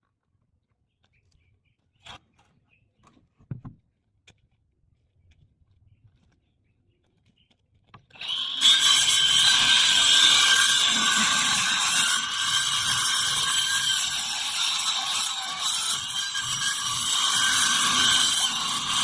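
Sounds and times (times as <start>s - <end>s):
circular saw cutting plywood: 8.1s - 19.0s.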